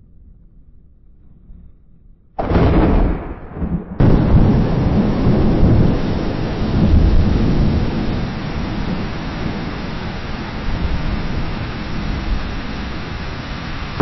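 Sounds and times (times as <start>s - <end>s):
thunder rumbling and clapping: 2.4s - 14.0s
steady hiss: 4.5s - 14.0s.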